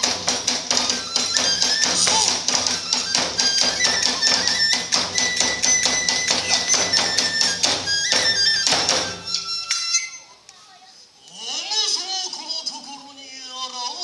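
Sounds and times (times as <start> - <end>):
fast drumming: 0.0 - 9.6
high bamboo flute melody: 0.0 - 10.3
small hand cymbals clashing: 0.0 - 10.3.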